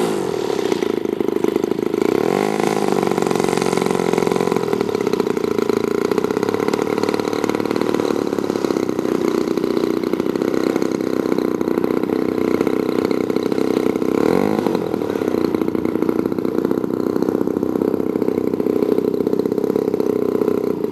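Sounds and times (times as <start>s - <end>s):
model plane engine running: 0.0s - 20.9s.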